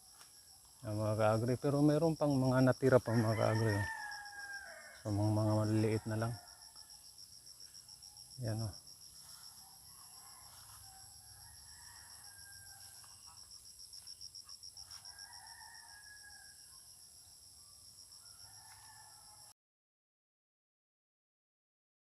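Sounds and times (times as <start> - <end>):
insects trilling: 0.0 - 19.5
distant rooster crowing: 2.7 - 7.2, 9.4 - 17.0, 17.8 - 19.5.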